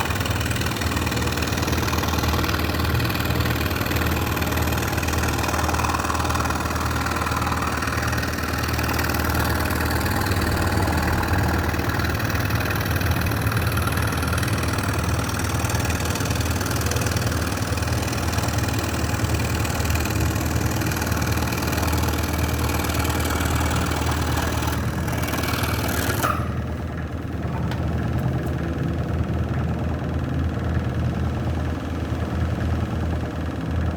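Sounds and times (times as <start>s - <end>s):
saw blade cutting wood: 0.0s - 26.6s
scroll saw motor hum: 0.0s - 26.7s.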